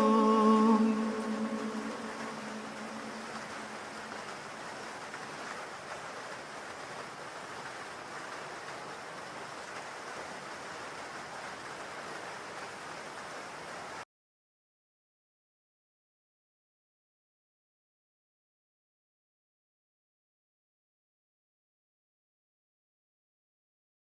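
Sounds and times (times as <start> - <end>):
steady rain hiss: 0.0 - 14.0.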